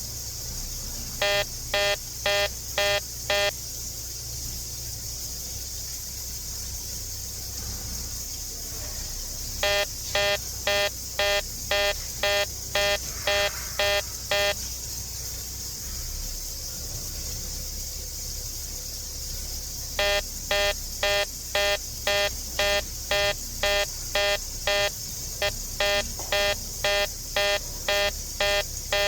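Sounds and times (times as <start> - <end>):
electronic beeper short buzzy beeps: 1.2 - 3.5, 9.6 - 14.6, 20.0 - 29.0.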